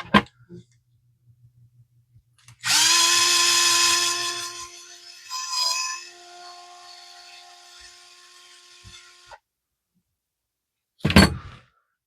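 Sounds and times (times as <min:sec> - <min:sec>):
power screwdriver whine: 0:02.6 - 0:06.3.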